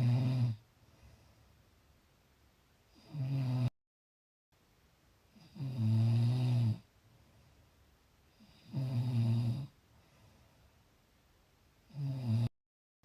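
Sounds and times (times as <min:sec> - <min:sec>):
person snoring: 0:00.0 - 0:00.6, 0:03.0 - 0:03.7, 0:05.3 - 0:06.9, 0:08.4 - 0:09.8, 0:11.9 - 0:12.5.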